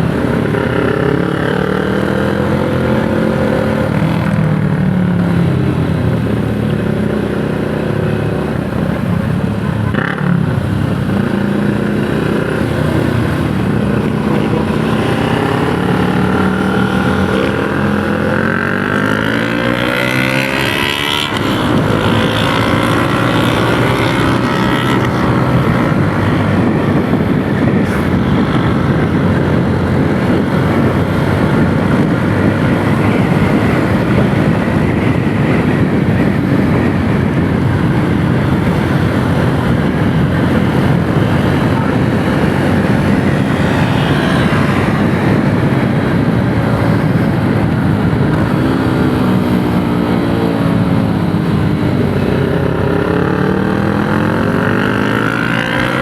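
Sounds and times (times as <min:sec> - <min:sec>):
motorcycle engine revving: 0:00.0 - 0:56.0
wind and road noise: 0:00.0 - 0:56.0.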